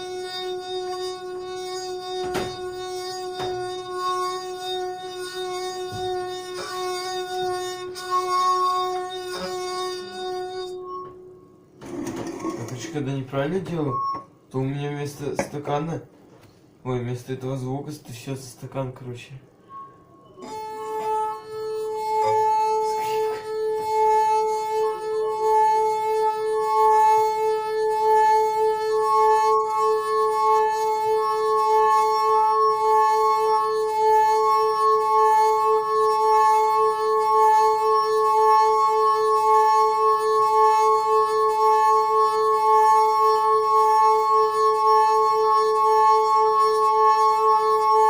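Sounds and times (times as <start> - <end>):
wine glass rim ringing tone: 6.5 - 11.5, 12.4 - 14.4, 19.6 - 23.6.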